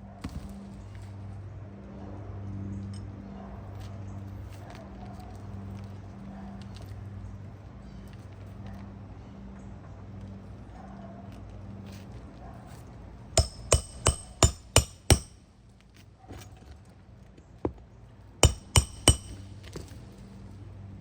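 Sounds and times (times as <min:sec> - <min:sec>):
hammer striking metal: 0:13.4 - 0:15.4, 0:18.4 - 0:19.4.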